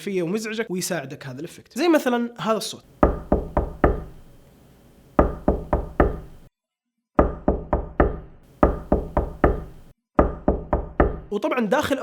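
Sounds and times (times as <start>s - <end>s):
faint background hiss: 2.7s - 6.5s
knocking: 3.0s - 4.4s, 5.2s - 6.5s, 7.2s - 11.3s.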